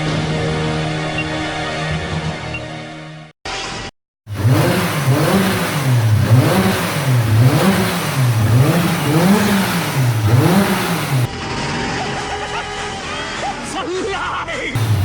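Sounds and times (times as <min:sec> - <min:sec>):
car engine revving: 0:04.3 - 0:11.3, 0:14.8 - 0:15.0.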